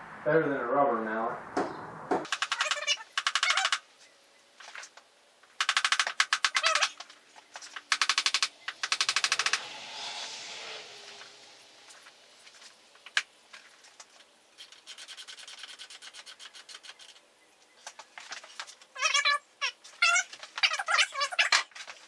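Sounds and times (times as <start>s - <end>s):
squeaking rubs: 2.4s - 3.8s, 5.6s - 8.4s, 12.4s - 17.2s, 17.8s - 22.0s
light ratchet clicks: 7.9s - 9.6s.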